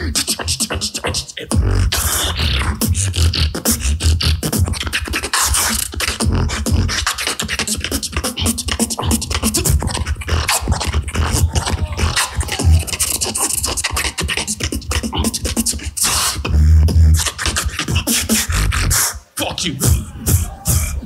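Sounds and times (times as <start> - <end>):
beatboxing: 0.0 - 21.0.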